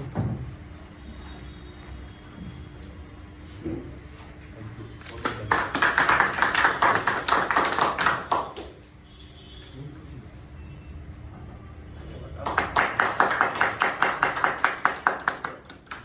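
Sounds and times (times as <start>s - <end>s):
people clapping: 5.0s - 8.9s, 12.4s - 16.0s.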